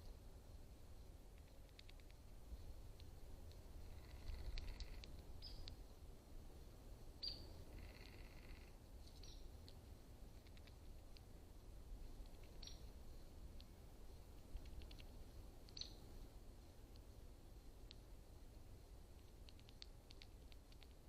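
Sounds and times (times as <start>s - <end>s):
buzzy bird trills: 3.8s - 5.7s, 7.2s - 9.4s
high bird chirps: 3.9s - 5.7s, 7.2s - 8.5s, 9.2s - 9.4s, 12.6s - 12.9s.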